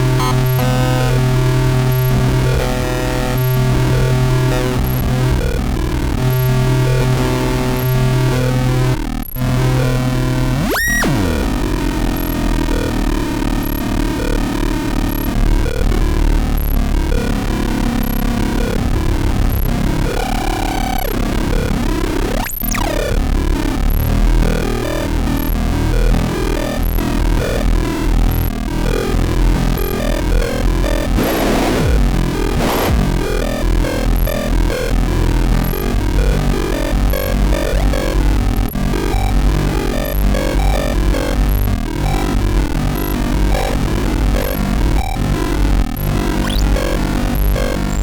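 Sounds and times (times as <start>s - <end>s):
electronic noise music: 0.0s - 5.6s, 30.9s - 41.4s, 42.0s - 48.0s
low droning note: 31.0s - 34.5s.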